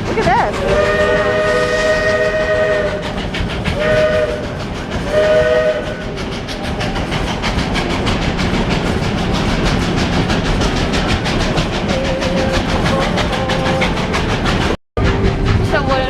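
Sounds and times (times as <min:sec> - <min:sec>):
train rhythmic clatter: 0:00.0 - 0:16.0
steam locomotive whistle: 0:00.4 - 0:06.4, 0:11.9 - 0:14.1.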